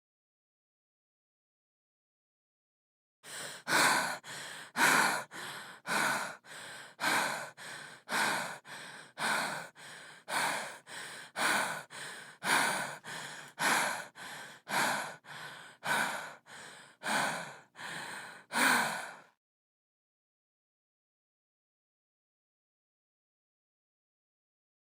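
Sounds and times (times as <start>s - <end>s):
woman breathing heavily: 3.2s - 19.4s.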